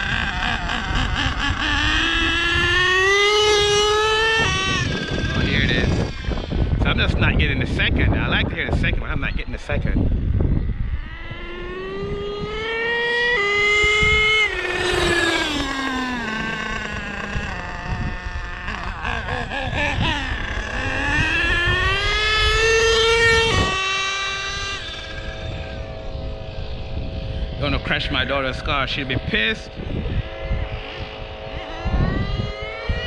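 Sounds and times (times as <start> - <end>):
model truck engine revving: 0.0 - 6.8, 10.8 - 27.1.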